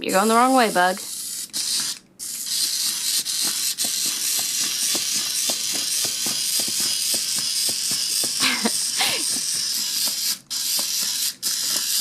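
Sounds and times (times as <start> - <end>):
small motor high hiss: 0.5 - 12.0
robot legs clicking: 1.1 - 12.0.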